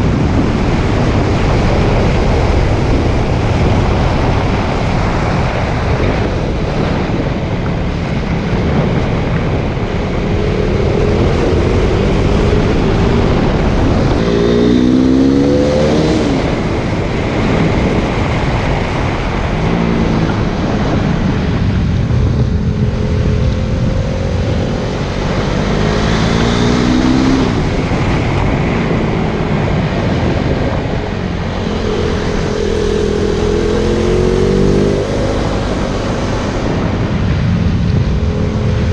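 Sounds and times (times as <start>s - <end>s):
wind rush on microphone: 0.0s - 38.9s
motorcycle engine revving: 7.9s - 38.9s.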